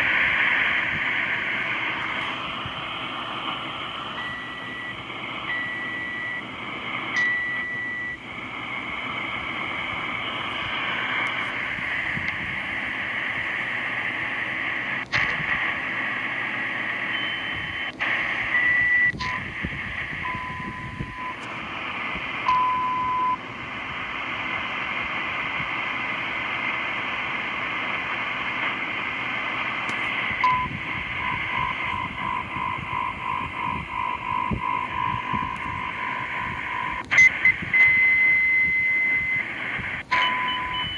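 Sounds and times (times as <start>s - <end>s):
radio static hiss: 0.0s - 40.9s
sharp static clicks: 0.0s - 40.9s
morse code beeps: 4.0s - 6.5s, 7.1s - 8.2s, 17.1s - 21.5s, 22.4s - 23.4s, 29.9s - 40.9s.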